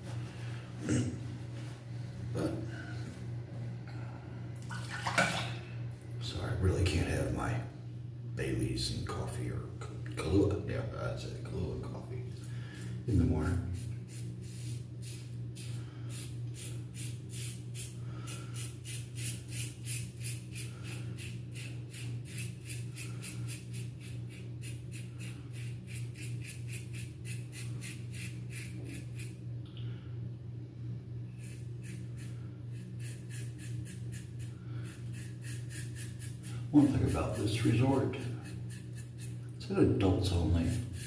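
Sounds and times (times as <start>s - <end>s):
razor scraping stubble: 18.6s - 29.4s, 31.3s - 41.0s.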